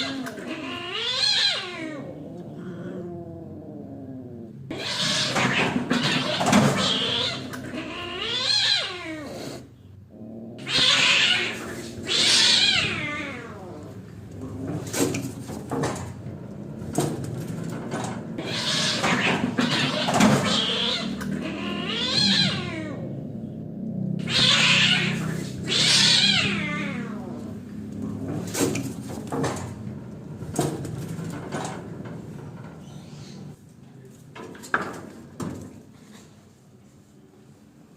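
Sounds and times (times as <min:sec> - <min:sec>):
cats yowling and screeching: 0:00.0 - 0:09.6, 0:10.6 - 0:15.3, 0:18.4 - 0:27.6.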